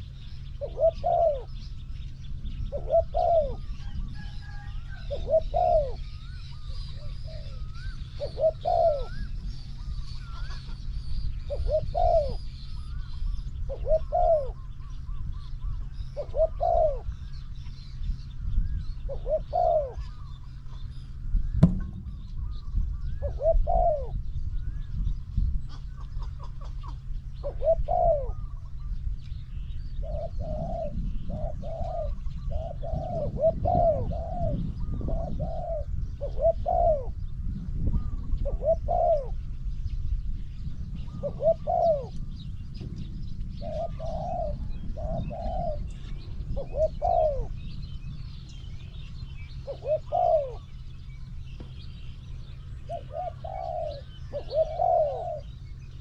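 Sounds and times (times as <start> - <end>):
doves cooing: 0.0 - 25.0, 25.6 - 39.7, 40.5 - 56.0
faint high bird chirping: 0.0 - 56.0
steady low hum: 0.0 - 56.0
low rumble: 20.1 - 26.2, 37.0 - 56.0.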